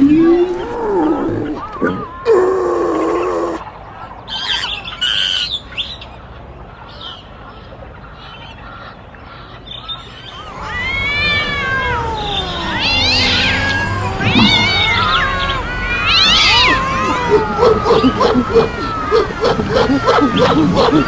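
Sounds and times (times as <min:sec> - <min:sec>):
cat meowing: 0:00.0 - 0:03.6, 0:10.2 - 0:21.0
bird-like squawks and chirps: 0:06.9 - 0:21.0.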